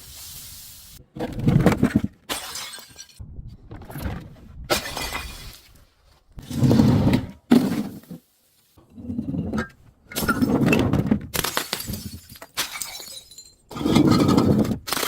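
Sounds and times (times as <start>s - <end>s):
glass bottles shattering: 2.3s - 3.2s, 4.8s - 5.6s, 10.1s - 10.7s, 11.3s - 14.2s.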